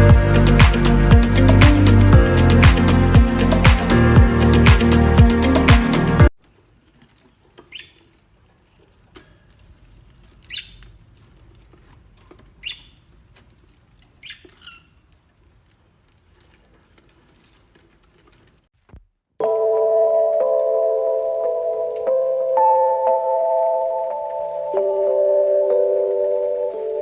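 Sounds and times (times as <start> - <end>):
small animal squeaky chirps: 7.7 - 8.0, 10.5 - 10.8, 12.6 - 13.0, 14.2 - 15.0.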